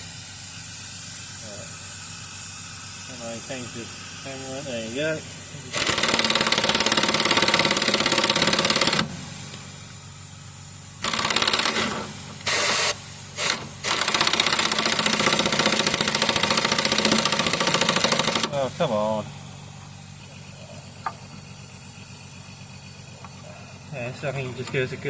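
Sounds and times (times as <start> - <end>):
impact wrench hammering: 5.7 - 9.6, 11.0 - 18.6.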